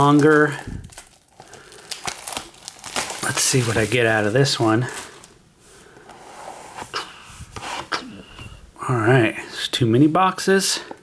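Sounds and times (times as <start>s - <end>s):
cardboard and packaging rustling: 0.0s - 7.9s.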